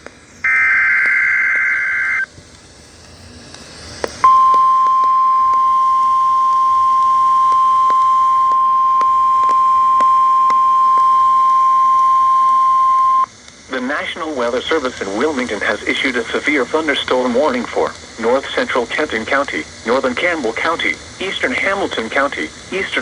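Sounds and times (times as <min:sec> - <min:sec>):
radio hiss: 0:00.0 - 0:23.0
buzzing digital data burst: 0:00.4 - 0:02.3
steady warning alarm tone: 0:00.4 - 0:23.0.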